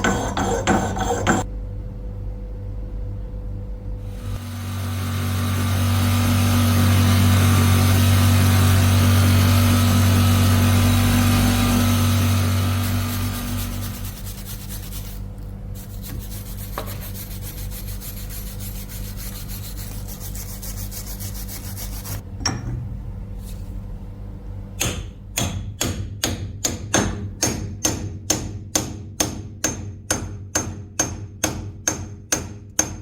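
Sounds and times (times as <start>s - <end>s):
steady scraping rub: 6.6s - 22.2s
hammer striking metal: 24.8s - 33.0s.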